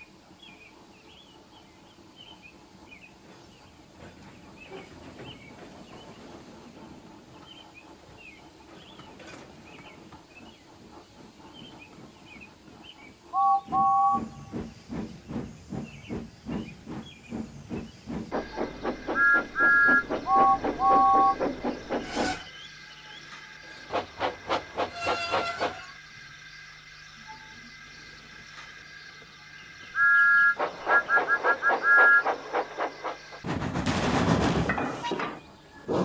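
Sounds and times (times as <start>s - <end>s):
steam locomotive whistle toots: 13.3s - 14.6s, 18.4s - 23.1s, 23.8s - 26.1s, 30.0s - 33.2s
steam engine chuffing: 13.8s - 26.9s, 30.6s - 36.0s
faint birdsong: 14.3s - 33.4s.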